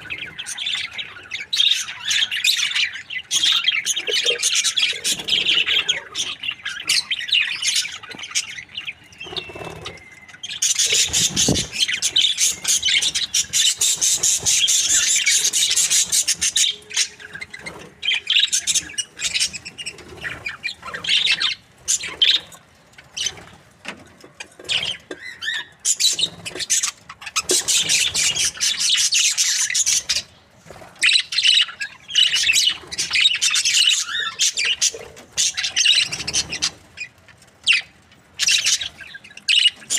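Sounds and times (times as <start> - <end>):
budgerigars chattering: 0.0 - 22.6, 31.0 - 39.9.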